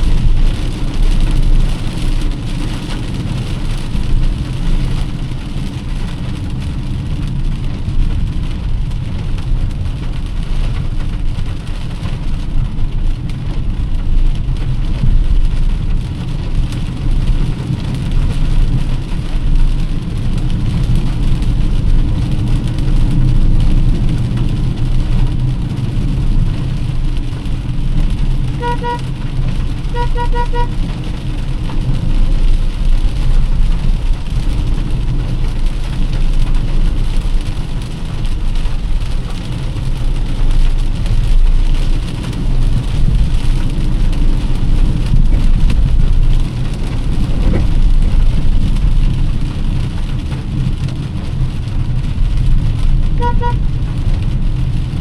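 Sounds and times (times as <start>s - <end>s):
rain hissing: 0.0s - 55.0s
road and engine rumble: 0.0s - 55.0s
short beeping toots: 28.6s - 29.0s, 30.0s - 30.7s.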